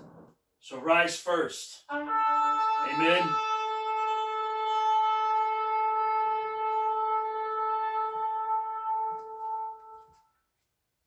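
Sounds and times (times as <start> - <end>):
shofar long blast: 1.9 - 10.2.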